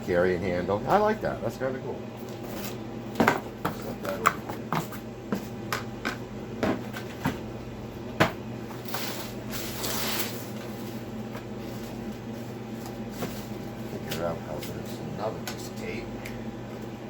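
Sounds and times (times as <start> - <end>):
cardboard rustling scrape: 8.8 - 14.0.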